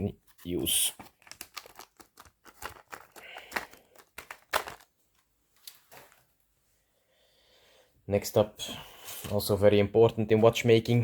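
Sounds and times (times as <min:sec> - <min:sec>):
packaging crinkling: 0:00.9 - 0:06.3.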